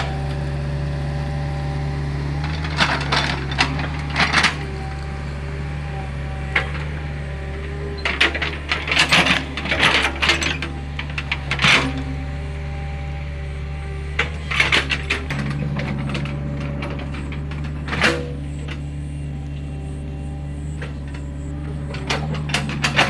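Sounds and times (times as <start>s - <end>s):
excavator diesel engine running: 0.0s - 23.0s.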